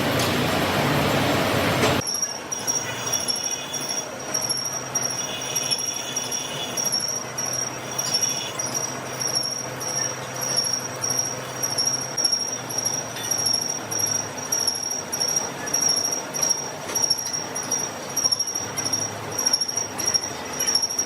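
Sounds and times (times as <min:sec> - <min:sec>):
metalworking machine running: 0:00.0 - 0:21.0
high thin pulsing tone: 0:02.1 - 0:21.0.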